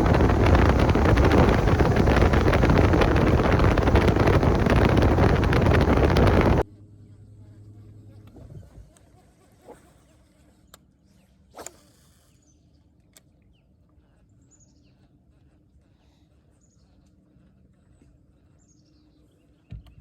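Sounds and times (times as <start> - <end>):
low steady hum: 0.0 - 9.0.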